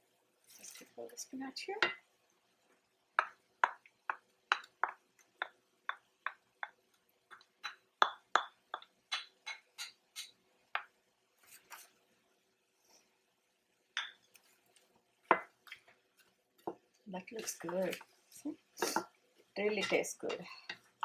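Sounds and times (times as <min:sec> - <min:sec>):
spoon clinking against a pan: 0:07.3 - 0:10.9, 0:19.6 - 0:20.9.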